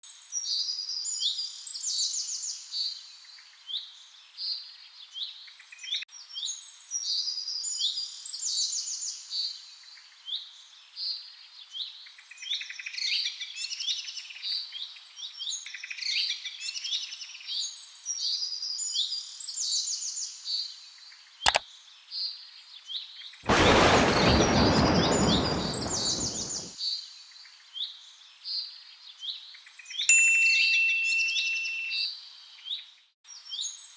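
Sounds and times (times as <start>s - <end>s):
loud rushing noise: 23.5s - 26.7s.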